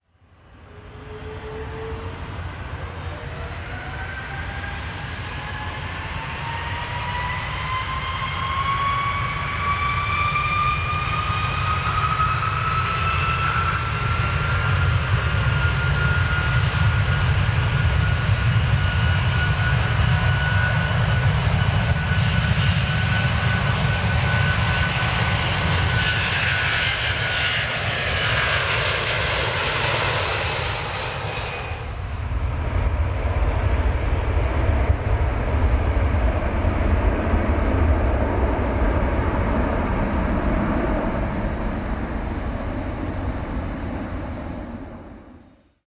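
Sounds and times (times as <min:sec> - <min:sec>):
airplane engines spooling up: 0:00.2 - 0:45.8
rising engine whine: 0:00.2 - 0:45.8
steady low rumble: 0:28.6 - 0:45.5.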